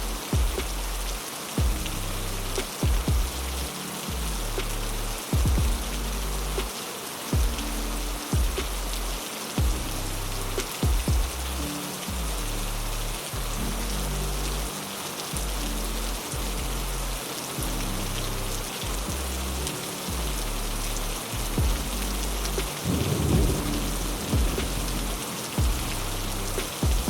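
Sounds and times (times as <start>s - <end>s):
heavy rain hissing: 0.0s - 27.0s
soft held musical notes: 0.0s - 27.0s
thunder rumble: 21.4s - 27.0s.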